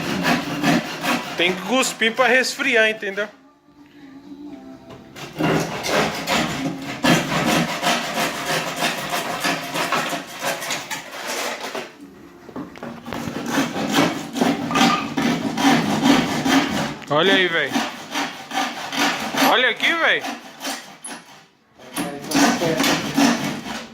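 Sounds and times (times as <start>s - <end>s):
hand saw cutting wood: 0.0s - 2.4s, 5.2s - 12.0s, 13.0s - 23.9s.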